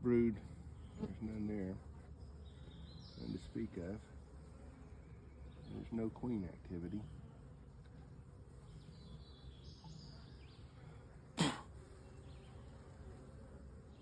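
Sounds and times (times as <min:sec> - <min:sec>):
bees buzzing: 0:00.0 - 0:14.0.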